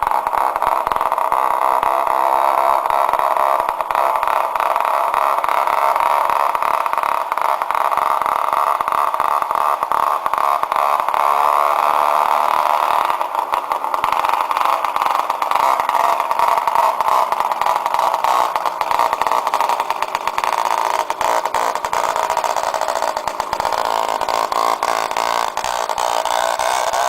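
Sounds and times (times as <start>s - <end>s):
moped engine buzzing drone: 0.0s - 27.0s.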